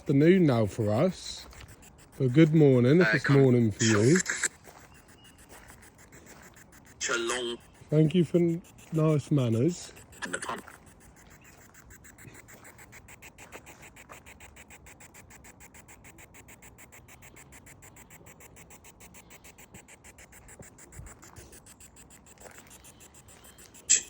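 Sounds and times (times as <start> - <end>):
rapid chopping radio static: 0.0 - 24.0.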